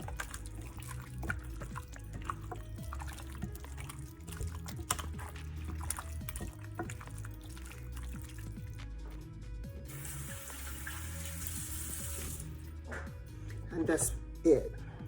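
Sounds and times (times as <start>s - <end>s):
wet squelching of chicken wings: 0.0s - 9.2s.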